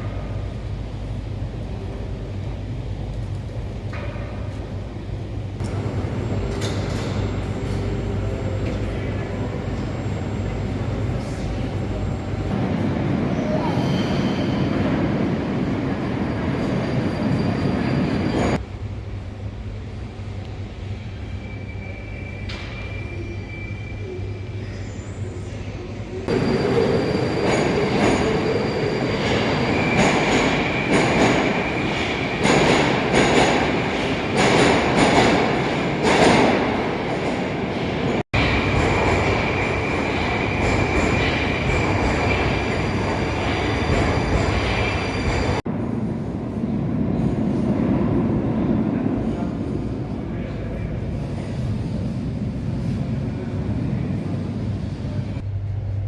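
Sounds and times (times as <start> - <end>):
train wheels squealing on rail: 6.1 - 12.4, 13.2 - 15.0, 16.2 - 18.6, 20.9 - 33.0, 38.4 - 45.6.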